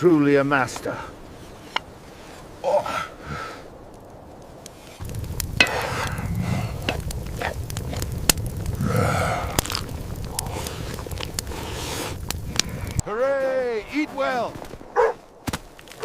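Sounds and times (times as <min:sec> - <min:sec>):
campfire crackling: 0:00.0 - 0:16.0
low rumble: 0:05.0 - 0:13.1.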